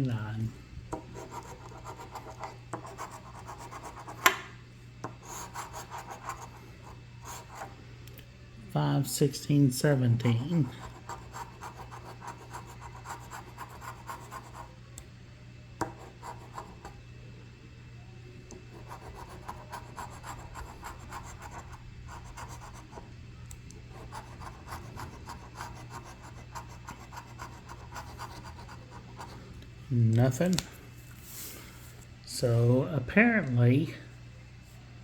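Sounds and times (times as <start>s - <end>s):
lottery ticket being scratched: 1.0s - 4.3s, 5.2s - 6.6s, 10.2s - 14.7s, 18.8s - 23.0s, 23.9s - 29.4s.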